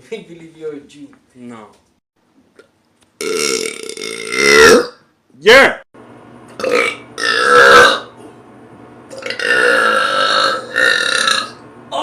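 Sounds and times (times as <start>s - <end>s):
person belching loudly: 3.2s - 5.0s, 6.6s - 8.1s, 9.1s - 11.6s.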